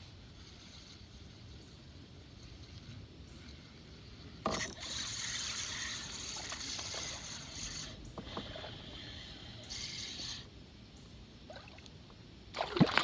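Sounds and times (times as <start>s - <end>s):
fishing reel whirring: 4.4s - 10.5s.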